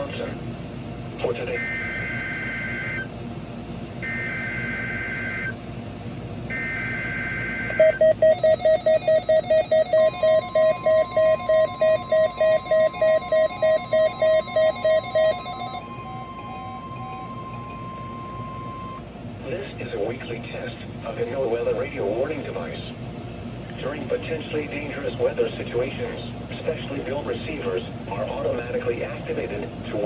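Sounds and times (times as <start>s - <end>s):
steady warning alarm tone: 1.2s - 3.2s, 3.8s - 5.7s, 6.5s - 19.4s
buzzy receiver alert beep: 6.5s - 19.0s
warbling two-tone data chirp: 6.5s - 19.0s.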